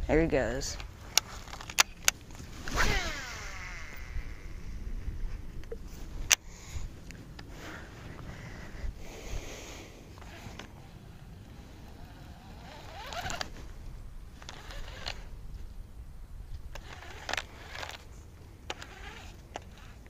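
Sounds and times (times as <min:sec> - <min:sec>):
low steady rumble: 0:00.0 - 0:20.0
fishing reel whirring: 0:02.6 - 0:04.7, 0:10.2 - 0:13.5, 0:14.4 - 0:15.3, 0:16.7 - 0:18.0, 0:18.7 - 0:20.0.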